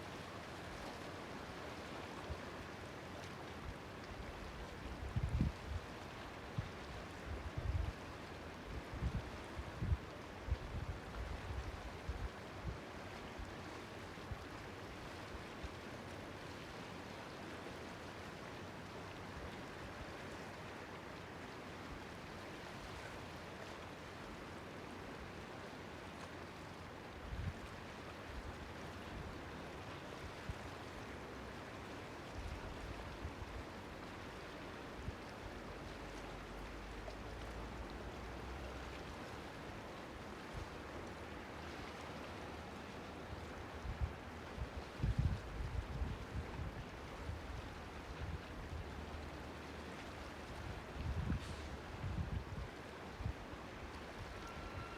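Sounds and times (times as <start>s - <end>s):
waves washing in harbour: 0.0s - 54.9s
wind rumble on microphone: 5.0s - 5.8s, 6.6s - 8.0s, 8.7s - 12.8s, 43.8s - 48.9s, 50.6s - 53.4s.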